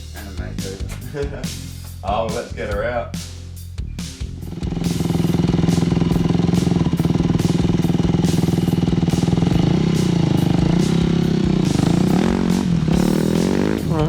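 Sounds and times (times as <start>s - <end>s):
dirt bike engine idling: 4.3s - 14.0s.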